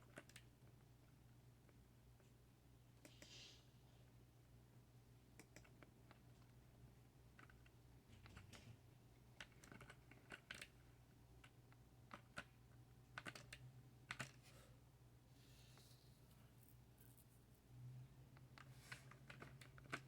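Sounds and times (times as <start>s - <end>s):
faint irregular clicks: 0.0s - 2.4s, 5.3s - 6.6s, 7.3s - 10.8s, 11.4s - 14.4s.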